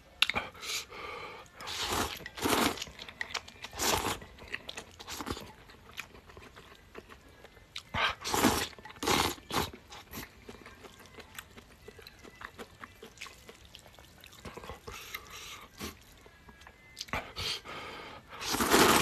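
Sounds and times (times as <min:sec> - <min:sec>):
person slurping noodles: 0:01.6 - 0:02.8, 0:08.2 - 0:09.6, 0:18.4 - 0:19.0
chewing with small clicks: 0:02.2 - 0:08.0, 0:08.8 - 0:17.2.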